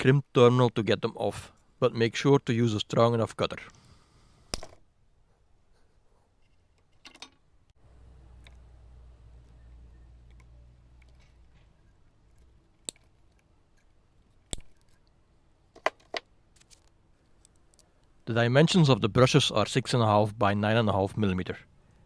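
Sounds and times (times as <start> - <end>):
faint low hum: 3.6 - 19.5
cutter snipping wires: 14.4 - 15.0.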